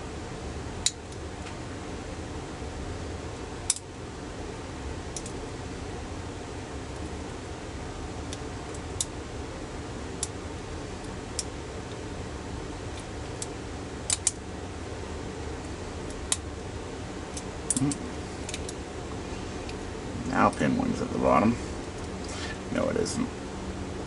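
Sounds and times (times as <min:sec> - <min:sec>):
lock pick metallic clicks: 0:14.1 - 0:14.4.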